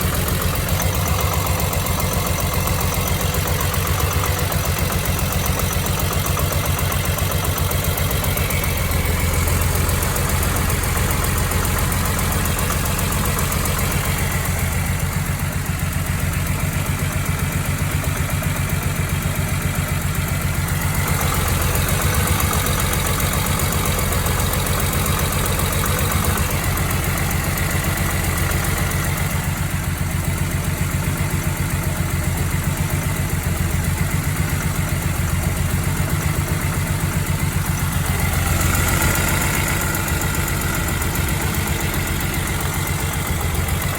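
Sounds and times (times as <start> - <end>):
engine idling rough with knock: 0.0 - 43.9.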